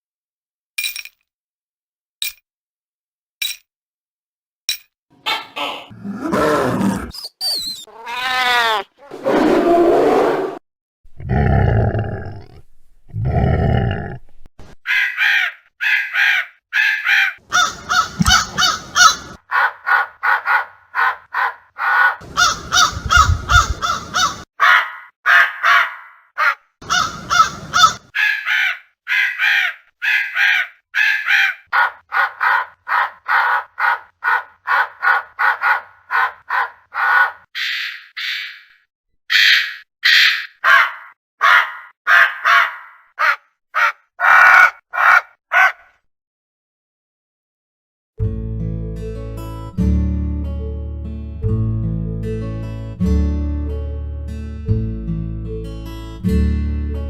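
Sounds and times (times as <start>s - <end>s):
crows cawing: 14.8s - 46.0s.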